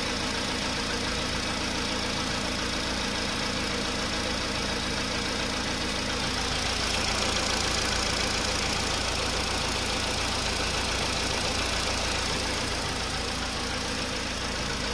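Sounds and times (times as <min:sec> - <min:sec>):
car engine running with knock: 0:00.0 - 0:14.9.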